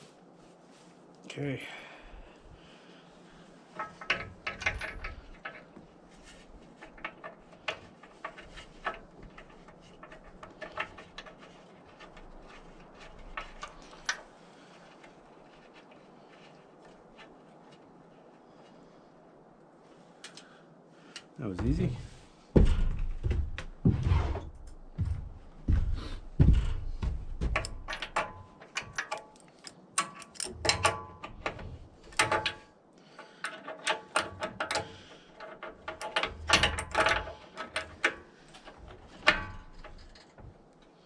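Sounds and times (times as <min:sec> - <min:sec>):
dull thunks of metal fittings: 0:21.6 - 0:24.4, 0:25.0 - 0:32.6
sharp metallic clicks and clinks: 0:27.0 - 0:32.7.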